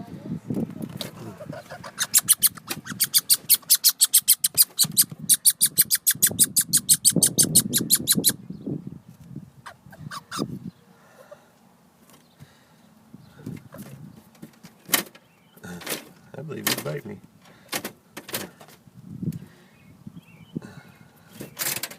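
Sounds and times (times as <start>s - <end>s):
squirrel chattering: 1.5s - 8.4s.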